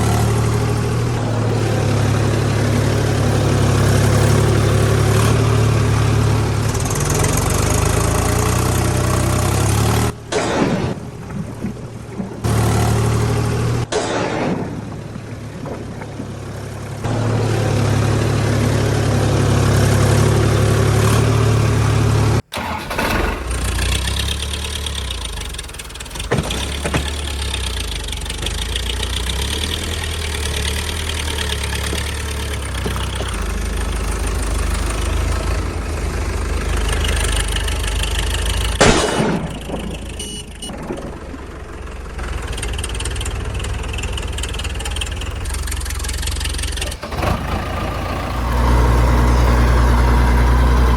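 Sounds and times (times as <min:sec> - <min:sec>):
vehicle engine running: 0:00.0 - 0:50.9.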